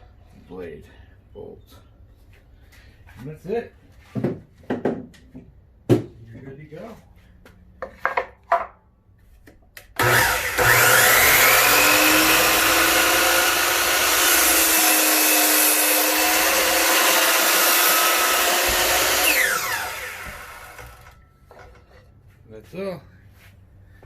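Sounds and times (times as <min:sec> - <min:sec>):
miter saw motor whining: 0:10.0 - 0:21.2.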